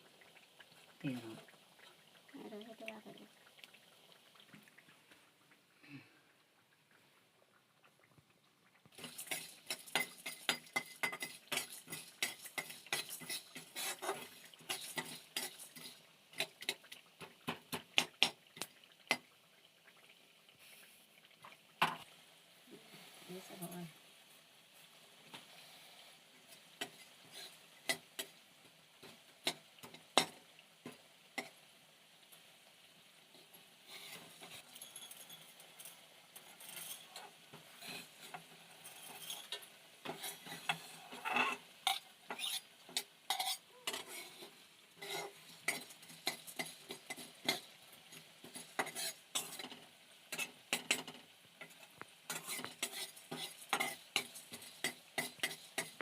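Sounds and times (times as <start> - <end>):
food sizzling: 0.0 - 56.0
metal spatula scraping pan: 9.0 - 16.1, 26.8 - 28.3, 33.9 - 56.0.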